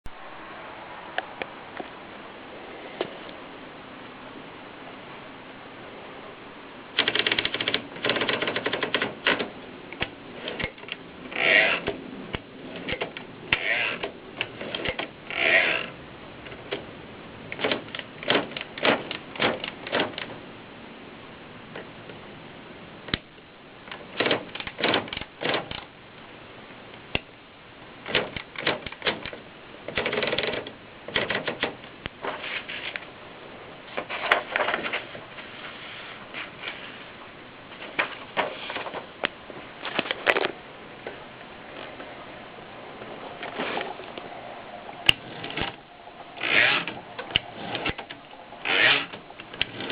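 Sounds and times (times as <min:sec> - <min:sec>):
typewriter keystrokes: 0:07.0 - 0:09.5, 0:28.1 - 0:31.8.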